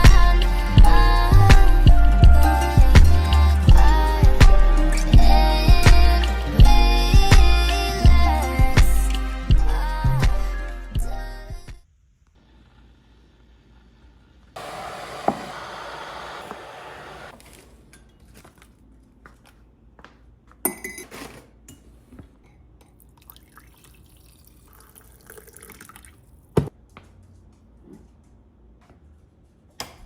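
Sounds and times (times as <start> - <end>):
tap water running: 14.6 - 17.4.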